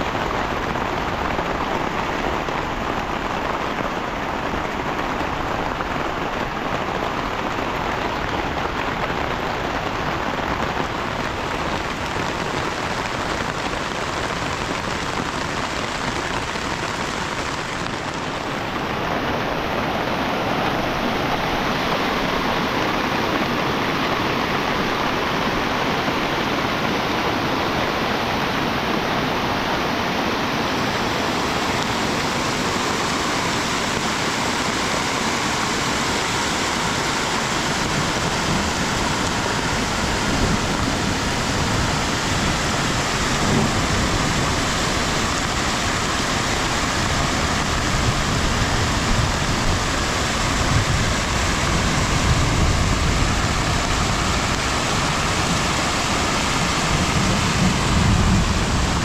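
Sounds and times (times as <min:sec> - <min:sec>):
heavy rain falling: 0:00.0 - 0:59.0
low rumbling: 0:36.3 - 0:59.0.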